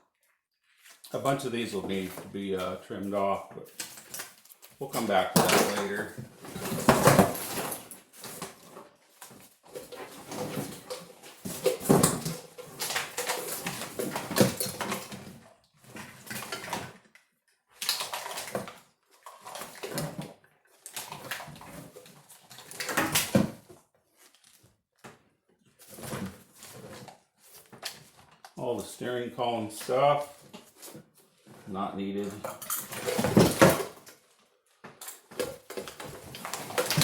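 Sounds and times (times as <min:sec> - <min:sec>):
plastic-sheathed wires rustling: 0:00.2 - 0:17.0, 0:17.8 - 0:37.0.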